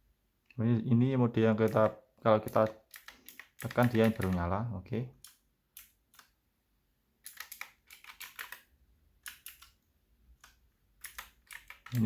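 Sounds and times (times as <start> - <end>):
clicky mechanical keyboard typing: 1.6 - 4.5, 7.2 - 9.8, 10.4 - 12.0.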